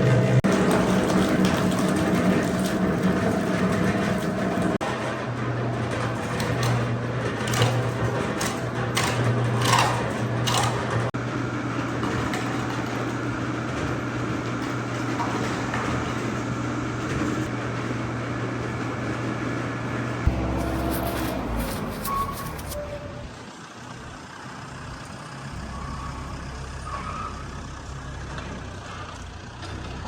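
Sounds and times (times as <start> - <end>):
machine humming: 20.2 - 23.3
sharp scrapes or knocks: 20.3 - 23.3.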